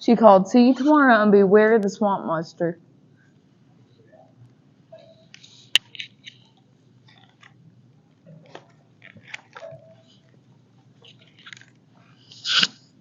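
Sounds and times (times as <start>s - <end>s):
book page turning: 8.5s - 10.4s, 11.0s - 11.8s.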